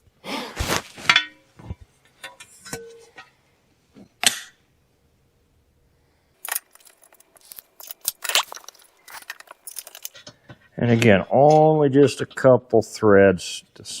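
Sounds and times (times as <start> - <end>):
small metal hardware clinking: 6.4 - 10.4.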